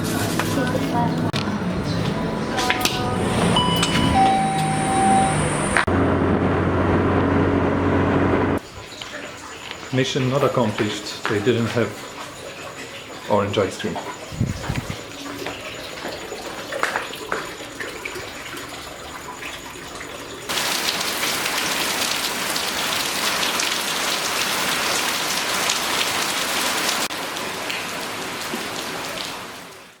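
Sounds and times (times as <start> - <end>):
heavy rain: 20.5 - 30.0.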